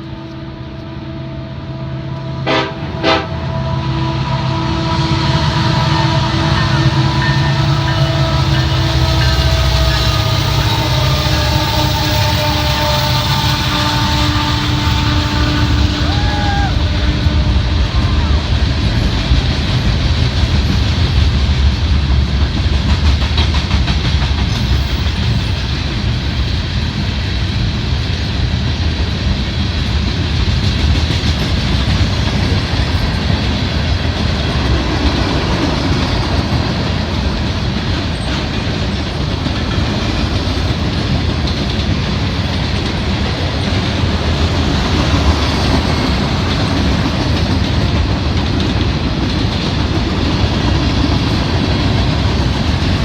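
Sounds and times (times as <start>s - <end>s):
train wheels rumbling on rails: 0.0s - 53.0s
clickety-clack over rail joints: 17.0s - 53.0s.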